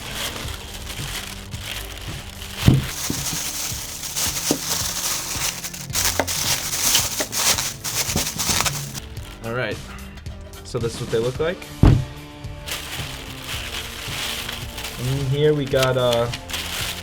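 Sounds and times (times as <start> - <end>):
packaging rustling: 0.0 - 9.5, 12.7 - 17.0
knocks and clunks: 11.8 - 12.2.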